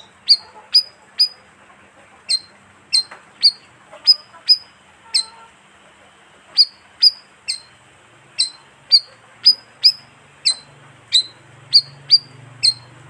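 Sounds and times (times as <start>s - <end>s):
bird lure call chirps: 0.0s - 1.4s, 2.3s - 5.3s, 6.6s - 7.7s, 8.4s - 13.0s.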